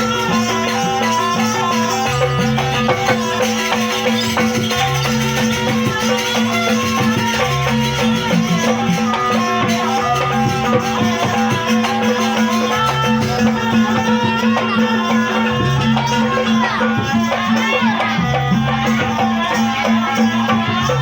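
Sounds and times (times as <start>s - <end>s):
dense rattling percussion: 0.0s - 21.0s.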